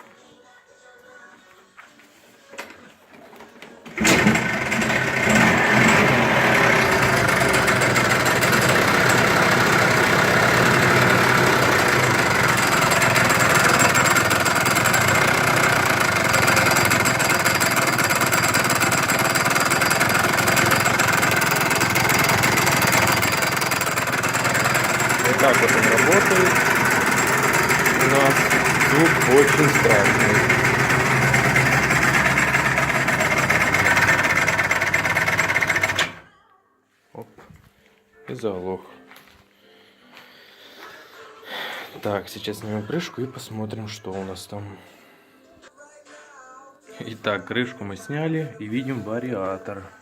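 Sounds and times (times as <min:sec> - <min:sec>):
scooter engine starting and running: 0:03.8 - 0:36.3
loud rapid engine knocking: 0:04.0 - 0:36.2.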